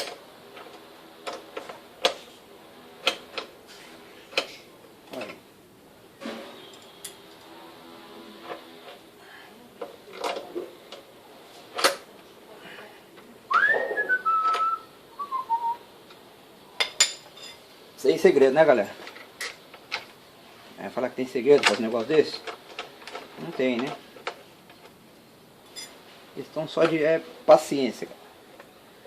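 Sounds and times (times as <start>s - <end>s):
person whistling: 13.5s - 15.8s.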